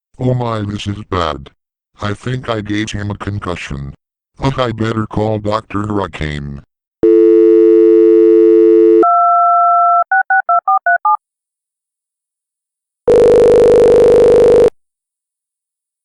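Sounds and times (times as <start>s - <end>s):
telephone dial tone: 7.0s - 11.2s, 13.1s - 14.8s
telephone ringing tone: 7.0s - 11.2s, 13.1s - 14.8s.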